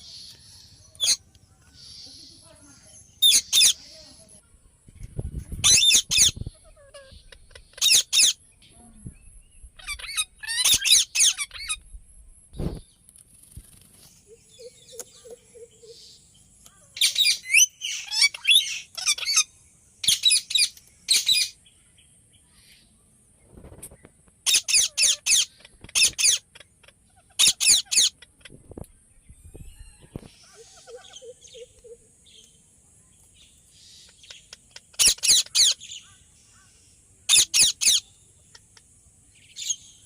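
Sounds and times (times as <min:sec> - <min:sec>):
parakeet calling: 0:03.2 - 0:04.2, 0:05.6 - 0:08.4, 0:09.7 - 0:11.8, 0:24.5 - 0:28.4, 0:33.8 - 0:38.8.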